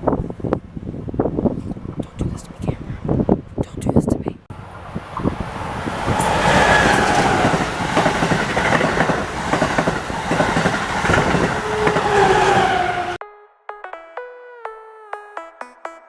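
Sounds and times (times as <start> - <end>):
train passing on rails: 4.6 - 13.2.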